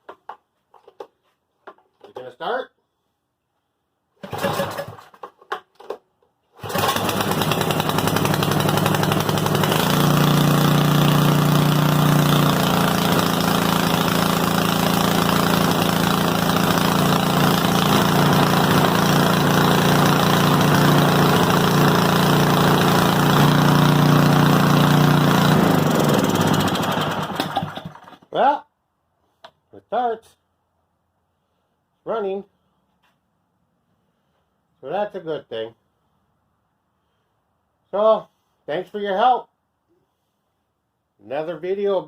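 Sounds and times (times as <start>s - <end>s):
snow blower engine running: 4.2s - 5.2s, 6.6s - 28.3s
snow blower engine cranking: 4.2s - 28.3s.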